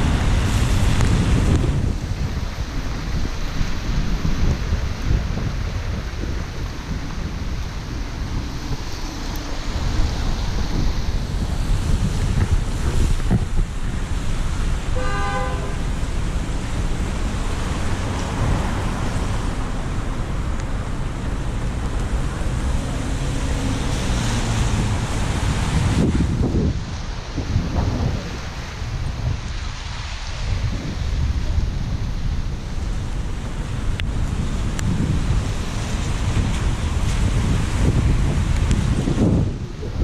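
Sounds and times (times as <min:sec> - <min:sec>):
car driving in rain: 0:00.0 - 0:40.0
wind noise on microphone: 0:00.0 - 0:40.0
car horn honk: 0:14.9 - 0:15.9.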